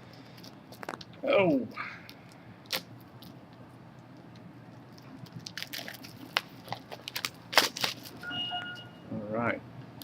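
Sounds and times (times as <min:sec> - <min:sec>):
plastic wrap and cardboard crinkling: 0:04.7 - 0:08.3.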